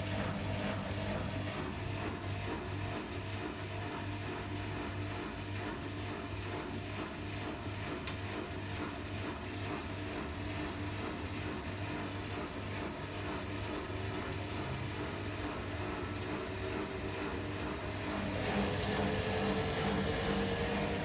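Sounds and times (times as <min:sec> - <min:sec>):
pump humming with pulsing chug: 0:00.0 - 0:21.0.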